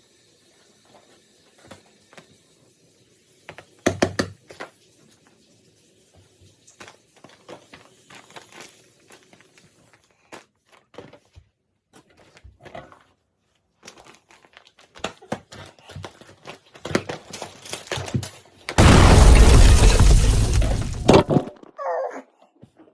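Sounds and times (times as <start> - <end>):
paper crinkling: 12.0 - 18.6.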